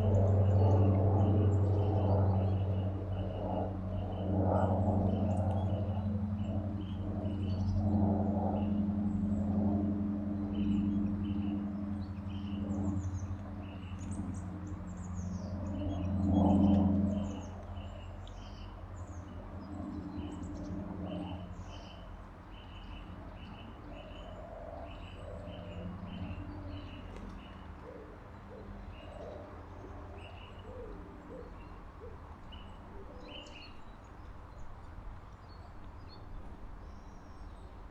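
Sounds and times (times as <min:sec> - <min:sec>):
steady low hum: 0:00.0 - 0:37.9
songbirds chirping: 0:10.3 - 0:37.8.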